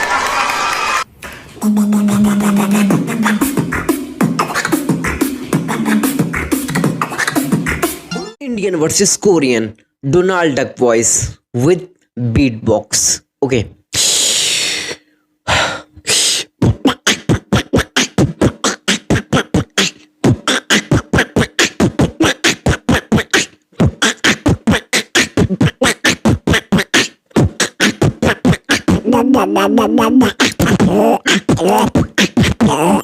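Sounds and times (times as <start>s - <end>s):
beatboxing drum hits: 1.6s - 8.3s, 16.1s - 33.0s
quacking cartoon duck voice: 16.8s - 33.0s.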